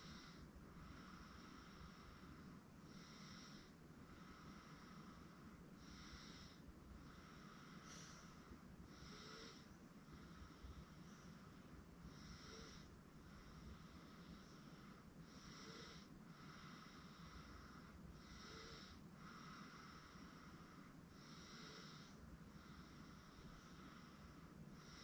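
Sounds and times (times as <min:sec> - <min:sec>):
baby breathing and snoring: 0:00.0 - 0:25.0
low background hum: 0:00.0 - 0:25.0.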